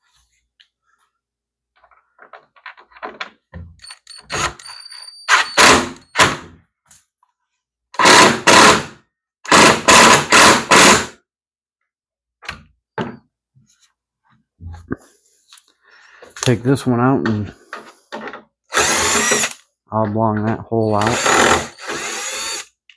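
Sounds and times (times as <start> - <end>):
power drill driving a screw: 3.8 - 6.3, 8.0 - 8.9, 9.5 - 11.1, 18.7 - 19.6, 20.9 - 22.7.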